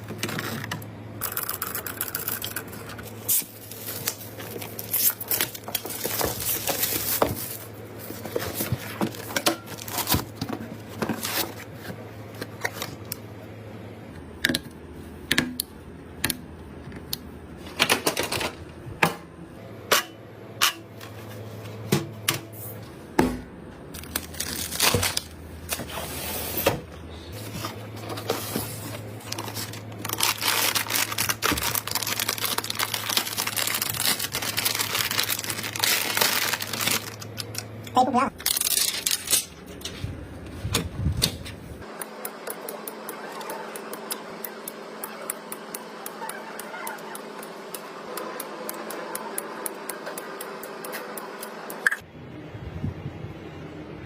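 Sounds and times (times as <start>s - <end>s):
plastic packaging crinkling: 0.0s - 11.7s, 23.9s - 25.8s, 28.9s - 37.8s, 38.4s - 39.6s
steady low hum: 0.0s - 54.0s.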